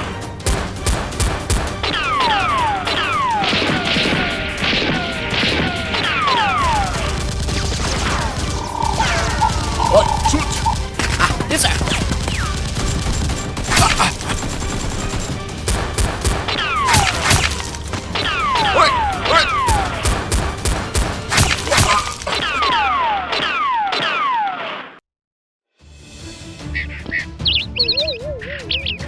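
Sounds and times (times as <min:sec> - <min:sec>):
action background music: 0:00.0 - 0:23.8, 0:25.8 - 0:29.0
sharp gunshot-like strikes: 0:00.5 - 0:22.1.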